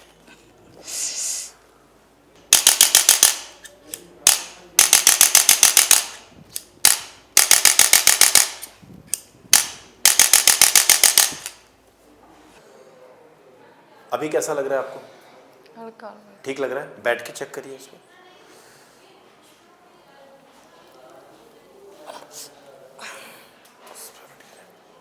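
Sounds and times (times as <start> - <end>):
rapid mechanical clicks: 4.3 - 6.2, 6.8 - 11.6.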